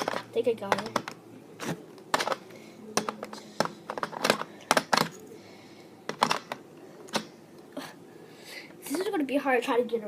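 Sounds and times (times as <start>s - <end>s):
plastic toy parts clicking: 0.0s - 1.2s, 2.1s - 2.4s, 3.0s - 5.2s, 6.1s - 7.3s.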